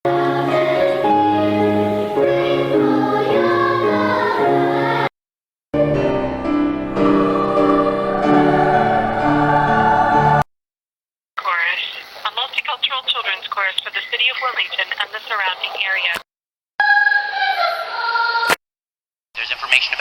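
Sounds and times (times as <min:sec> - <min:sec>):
children's choir singing: 0:00.1 - 0:05.1, 0:05.8 - 0:10.5, 0:16.8 - 0:18.6.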